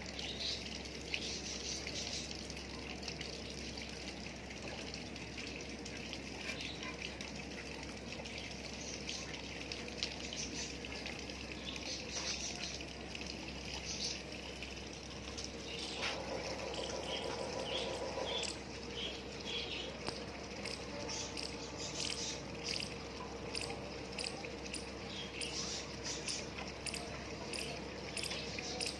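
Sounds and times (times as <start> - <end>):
rainwater trickling and dripping: 0.0 - 28.9.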